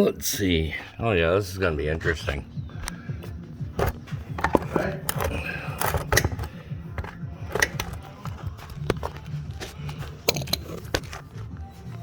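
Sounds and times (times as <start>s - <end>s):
quiet background music: 0.0s - 12.0s
tools clicking and knocking: 3.8s - 11.3s.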